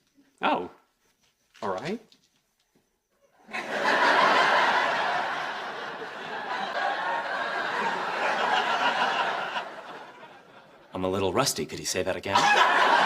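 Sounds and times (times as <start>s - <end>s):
audience laughing: 3.5s - 10.9s, 12.4s - 13.0s.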